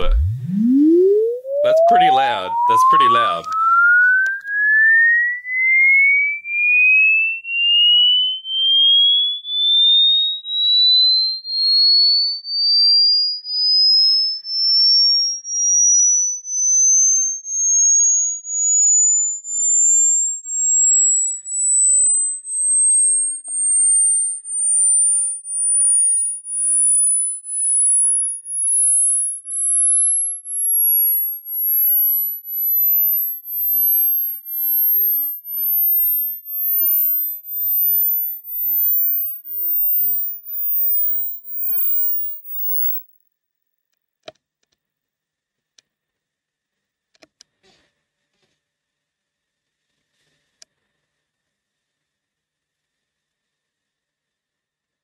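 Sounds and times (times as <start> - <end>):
high-pitched rising sine tone: 0.0 - 43.0.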